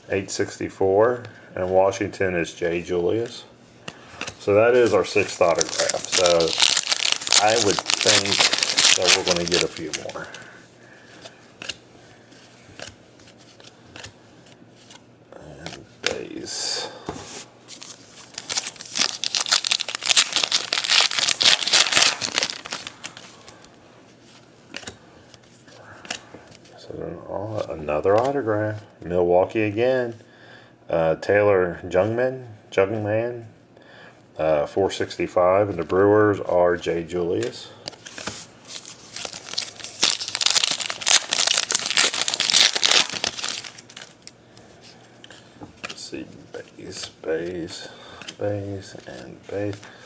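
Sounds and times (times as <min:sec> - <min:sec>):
card pack wrapper crinkling: 0:04.3 - 0:10.5, 0:17.7 - 0:23.8, 0:38.0 - 0:44.4.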